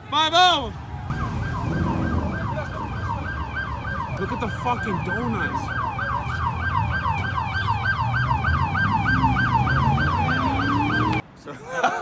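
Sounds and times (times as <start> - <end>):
police siren yelping: 1.1 - 11.2.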